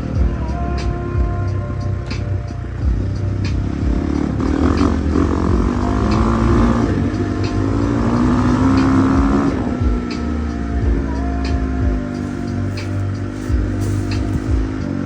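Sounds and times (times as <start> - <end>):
background music with beat: 0.0 - 15.0
motorcycle engine revving: 2.7 - 10.7, 12.0 - 15.0.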